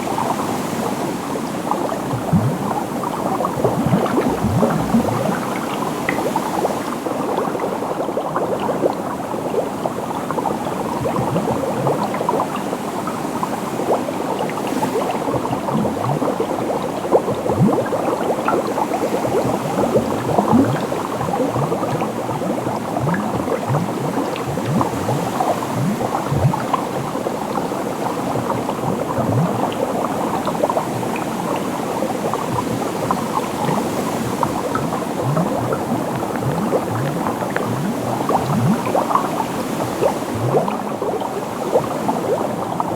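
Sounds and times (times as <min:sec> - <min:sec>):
water bubbling and gurgling: 0:00.0 - 0:42.9.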